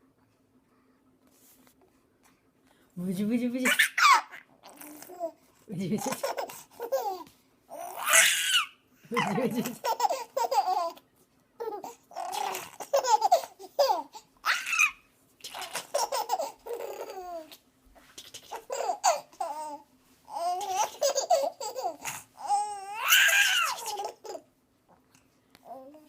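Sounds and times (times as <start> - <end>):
baby laughing and babbling: 3.6 - 11.0, 11.6 - 17.6, 18.2 - 24.5, 25.6 - 26.0
baby high squeal: 14.4 - 15.0.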